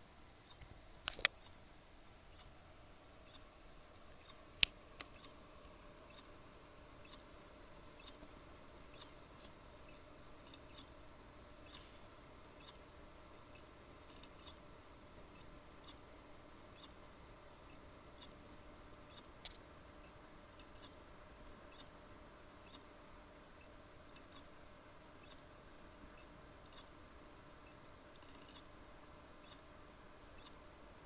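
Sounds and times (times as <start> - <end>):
faint steady hum: 0.0 - 31.0
computer clicks and chirps: 0.4 - 1.6, 3.2 - 5.3, 6.1 - 6.3, 7.0 - 7.2, 8.0 - 8.2, 8.9 - 9.2, 9.9 - 10.9, 13.5 - 14.6, 15.4 - 16.0, 19.1 - 19.6, 20.5 - 21.0, 22.6 - 22.9, 24.1 - 24.5, 25.2 - 26.9, 27.7 - 28.7, 29.4 - 29.6, 30.4 - 30.6.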